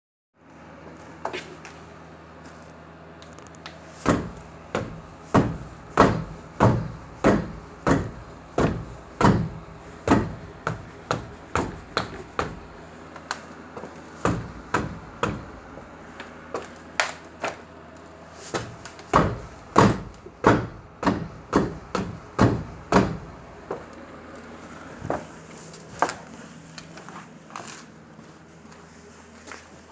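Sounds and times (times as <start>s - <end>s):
rhythmic knocking from wheel: 4.1s - 12.8s.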